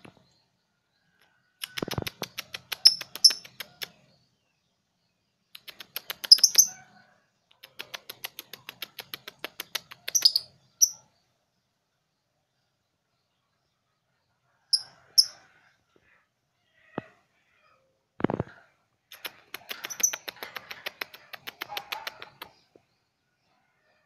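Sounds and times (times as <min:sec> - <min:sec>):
lovebird ticking chirps: 0:01.6 - 0:04.0, 0:05.6 - 0:06.8, 0:07.6 - 0:11.1, 0:14.8 - 0:15.4, 0:19.2 - 0:22.8
bird shrill squeaks: 0:06.2 - 0:06.8.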